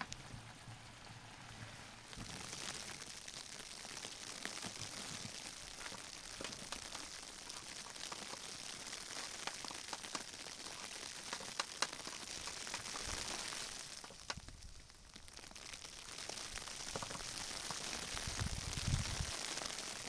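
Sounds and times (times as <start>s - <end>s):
steady rain hiss: 0.0s - 20.0s
drops ticking on a surface: 3.0s - 17.8s.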